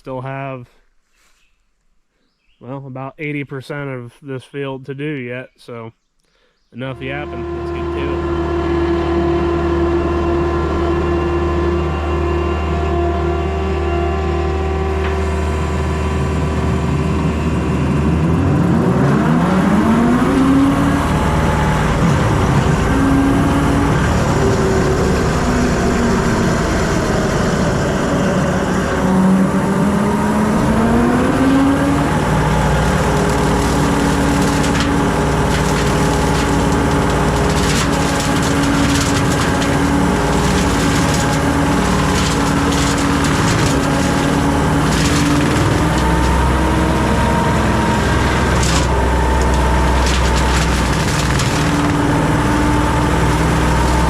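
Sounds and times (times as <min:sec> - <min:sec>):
diesel engine revving: 0:06.8 - 0:54.0
brush crackling as it is cut: 0:14.9 - 0:18.7, 0:30.9 - 0:54.0.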